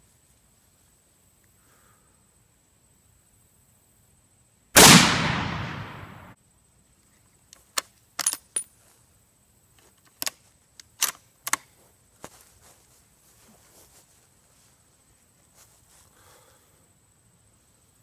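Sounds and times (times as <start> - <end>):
rifle shot: 4.8 - 6.4
rifle bolt clicking: 10.1 - 11.6.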